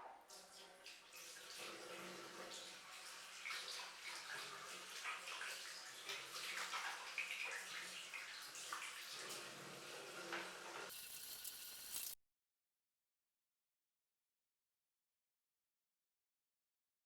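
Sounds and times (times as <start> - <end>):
tap water splashing into basin: 2.4 - 9.2.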